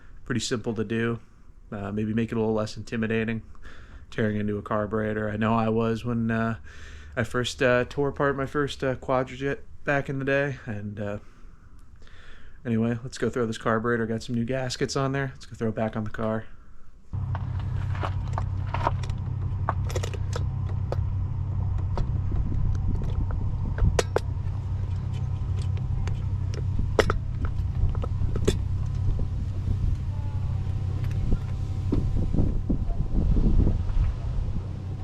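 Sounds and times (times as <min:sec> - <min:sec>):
steady low hum: 0:16.7 - 0:35.0.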